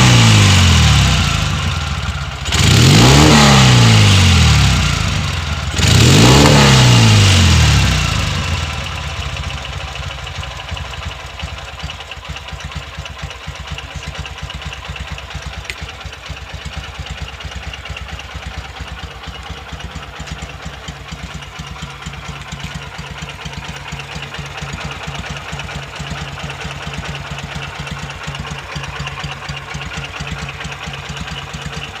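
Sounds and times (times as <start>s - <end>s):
motorcycle engine idling: 0.0s - 32.0s
motorcycle throttle blip: 6.3s - 7.0s, 15.3s - 16.5s, 21.3s - 25.2s.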